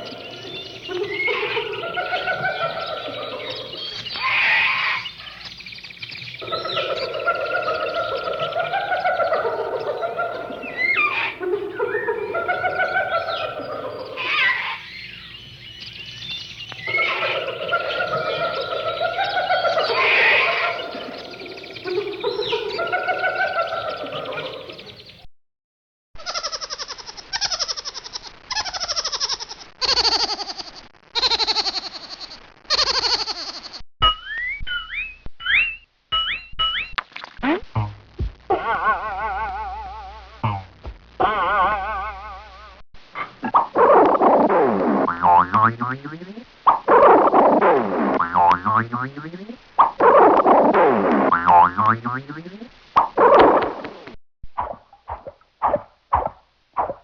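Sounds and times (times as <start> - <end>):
pulsing boing tone falling: 34.0 - 38.3, 40.4 - 41.0, 44.8 - 46.3, 48.1 - 49.4, 51.1 - 52.5.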